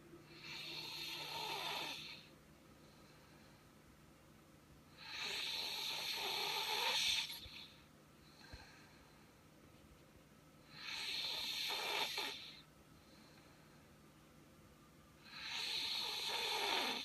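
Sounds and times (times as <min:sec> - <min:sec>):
person snoring: 0:00.3 - 0:02.3, 0:05.0 - 0:07.7, 0:10.7 - 0:12.6, 0:15.3 - 0:17.0.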